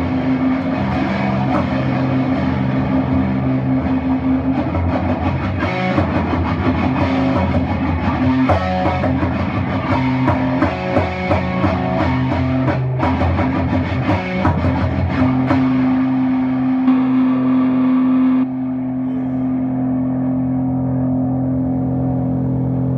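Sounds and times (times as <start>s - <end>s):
rock music with guitar and drums: 0.0s - 18.2s.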